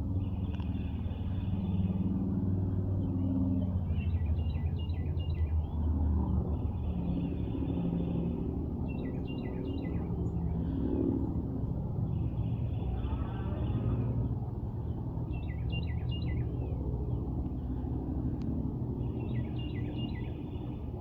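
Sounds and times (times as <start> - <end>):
distant road traffic rumble: 0.0 - 21.0
birds chirping: 6.5 - 11.4, 12.0 - 21.0.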